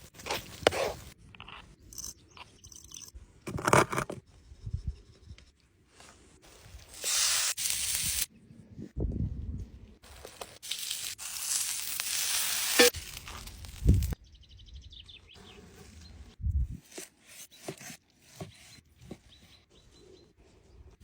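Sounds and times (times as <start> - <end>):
meat sizzling over fire: 6.9 - 8.3, 10.1 - 14.2.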